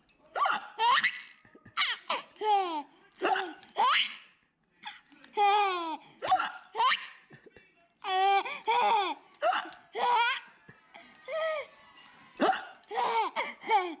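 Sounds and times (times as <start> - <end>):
squeaky laughter with hiccups: 0.4 - 2.2, 6.2 - 7.5.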